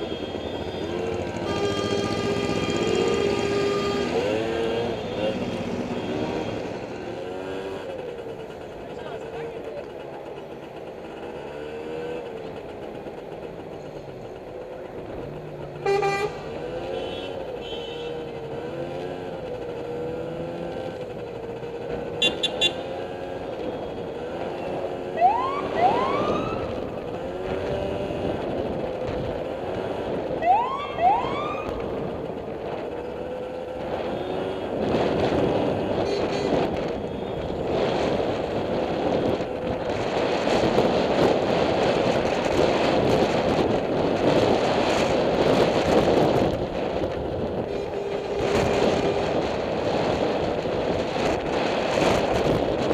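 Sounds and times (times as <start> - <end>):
truck engines running: 0.0 - 52.9
truck horn blasts: 0.1 - 4.3, 15.8 - 18.2, 22.2 - 22.8, 36.0 - 36.7, 47.7 - 48.6
rising siren whoops: 25.2 - 26.7, 30.4 - 31.7.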